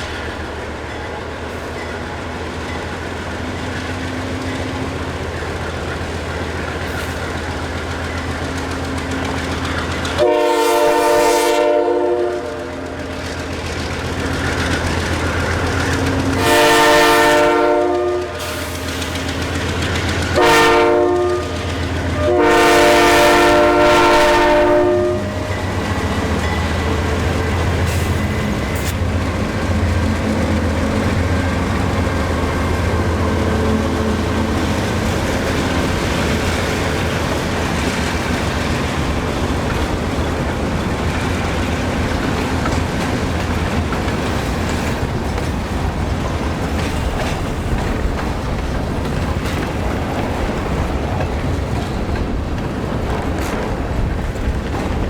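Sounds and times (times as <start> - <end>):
locomotive engine drone: 0.0 - 55.0
passing train rumble: 0.0 - 55.0
locomotive air horn: 10.2 - 13.0, 16.4 - 18.9, 20.4 - 25.6.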